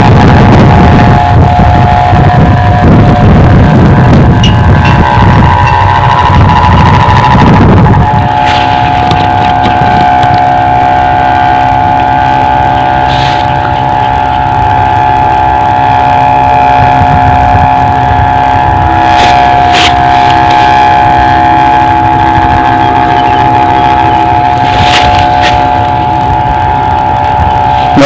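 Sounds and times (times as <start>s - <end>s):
kite hummer droning: 0.0s - 28.0s
wind rumble on microphone: 0.0s - 28.0s.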